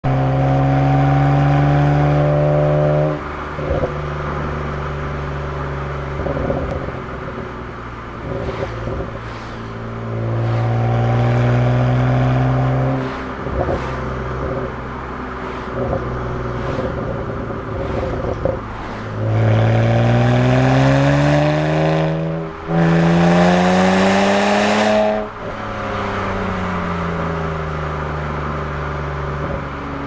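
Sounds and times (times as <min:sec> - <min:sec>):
car engine pulling hard: 0:00.0 - 0:30.0.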